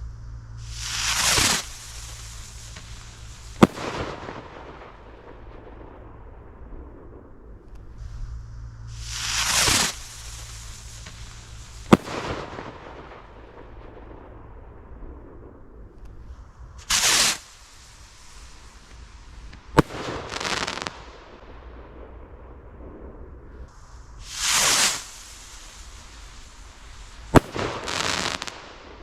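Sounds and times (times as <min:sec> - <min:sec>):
firework bang with hiss: 0:00.0 - 0:29.0
firework rocket whooshing up: 0:00.0 - 0:29.0.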